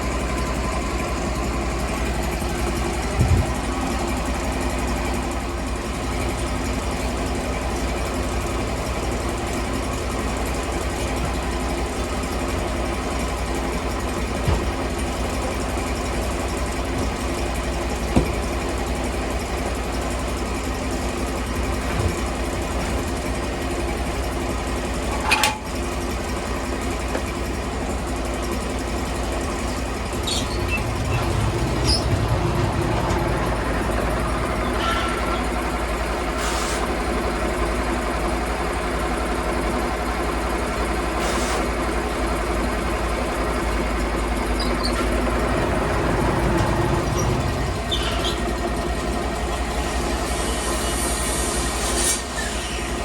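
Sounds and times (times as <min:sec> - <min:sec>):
sawmill engine running: 0:00.0 - 0:53.0
light metal clanks: 0:25.1 - 0:25.7.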